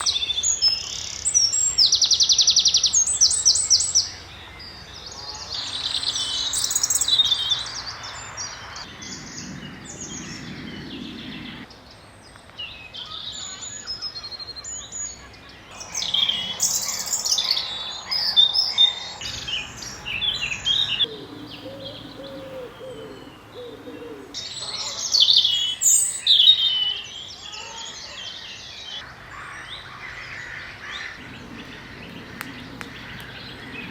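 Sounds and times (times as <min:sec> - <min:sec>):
loud rapid bird trill: 0:00.0 - 0:11.7, 0:13.0 - 0:33.9
wild birds singing and calling: 0:00.0 - 0:33.9
lower stacked bird call: 0:13.0 - 0:27.7.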